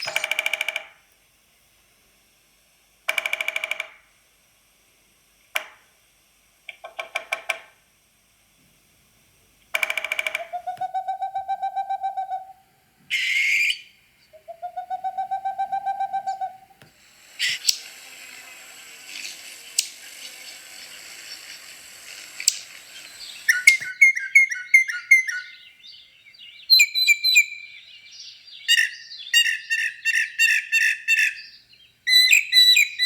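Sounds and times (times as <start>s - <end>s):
bird trills: 0.0s - 0.5s, 9.8s - 16.8s, 22.4s - 33.0s
long pulsed bird calls: 0.0s - 0.5s, 9.8s - 18.0s, 19.6s - 33.0s
harsh bird call burst: 10.4s - 17.9s, 22.8s - 33.0s.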